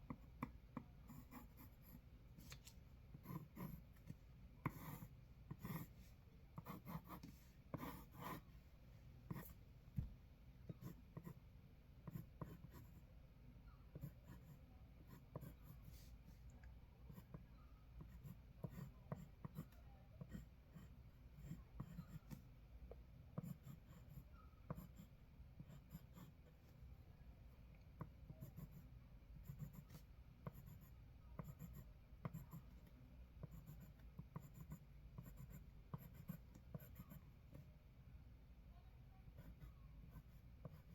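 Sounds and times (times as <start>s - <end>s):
pencil scribbling on paper: 1.1s - 2.0s, 3.2s - 4.1s, 4.7s - 6.0s, 6.6s - 8.4s, 12.0s - 13.0s, 18.0s - 22.4s, 23.4s - 26.3s, 29.4s - 32.7s, 33.4s - 37.2s, 39.4s - 40.9s.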